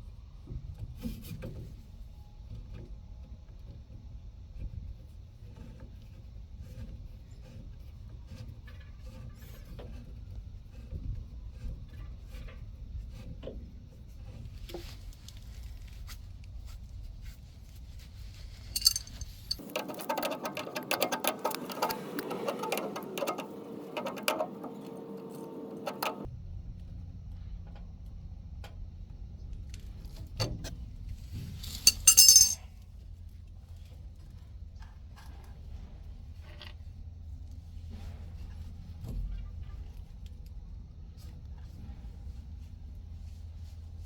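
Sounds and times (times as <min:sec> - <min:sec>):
low steady hum: 0:14.1 - 0:33.9
tools clinking on metal pipe: 0:18.8 - 0:24.5, 0:31.7 - 0:32.6.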